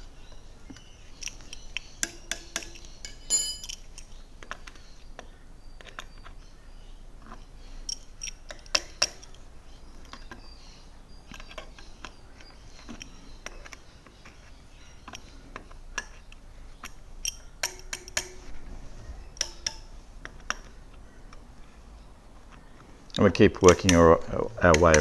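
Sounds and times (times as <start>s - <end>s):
metal tool clinking wheel spokes: 0.8s - 4.7s, 15.0s - 18.6s, 19.3s - 21.5s, 23.4s - 25.0s.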